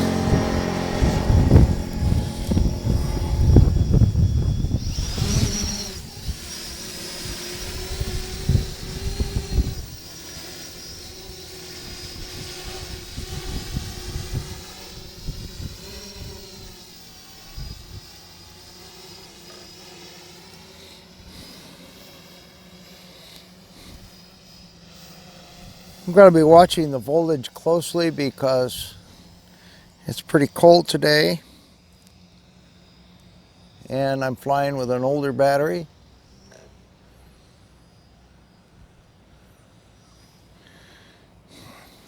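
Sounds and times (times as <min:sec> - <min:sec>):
wind buffeting microphone: 0:00.0 - 0:10.0, 0:11.8 - 0:16.8, 0:17.4 - 0:18.1
drone propellers humming: 0:00.0 - 0:42.0.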